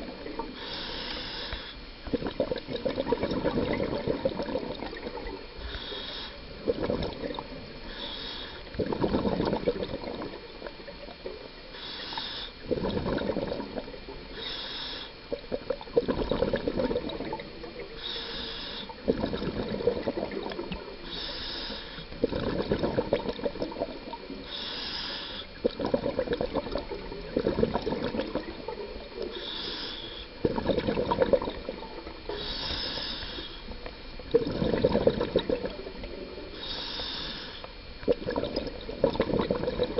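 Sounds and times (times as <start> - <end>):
exhaled bubbles gurgling: 0.0 - 39.9
regulator inhalation hiss: 0.5 - 1.9, 5.6 - 6.6, 7.8 - 8.8, 11.7 - 12.6, 14.3 - 15.3, 17.9 - 19.1, 21.0 - 22.2, 24.4 - 25.6, 29.2 - 30.4, 32.2 - 33.9, 36.5 - 37.8.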